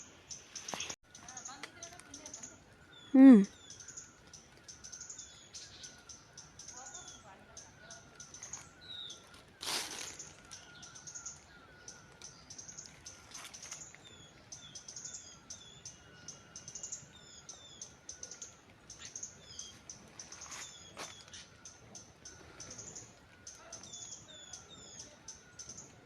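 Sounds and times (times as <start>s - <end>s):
small birds chirping: 0.0s - 26.0s.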